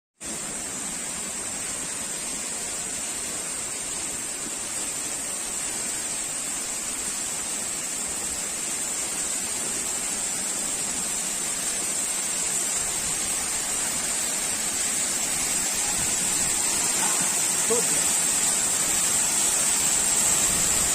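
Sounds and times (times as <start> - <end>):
waterfall rushing: 0.3 - 20.9.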